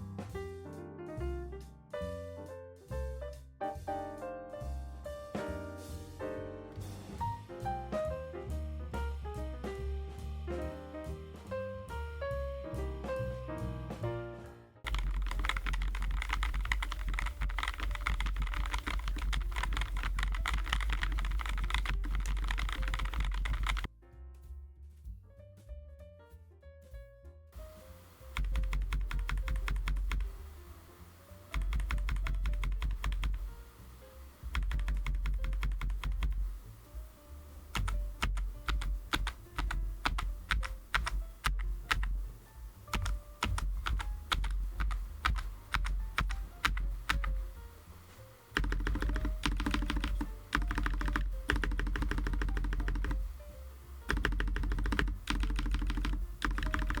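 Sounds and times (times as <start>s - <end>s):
background music: 0.0s - 26.6s, 27.6s - 57.0s
mechanical keyboard typing: 14.9s - 23.9s, 28.2s - 30.4s, 31.5s - 33.7s, 34.4s - 36.6s, 37.7s - 47.6s, 48.5s - 53.4s, 54.0s - 57.0s.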